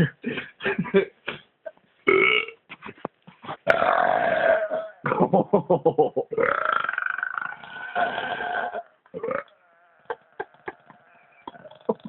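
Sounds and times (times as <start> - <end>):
man belching: 2.1 - 2.6, 3.7 - 5.3, 6.3 - 9.5, 11.4 - 12.0.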